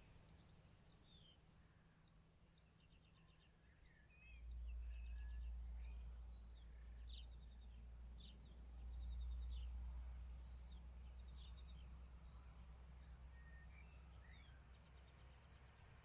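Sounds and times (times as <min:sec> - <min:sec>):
birds singing: 0:00.0 - 0:09.7.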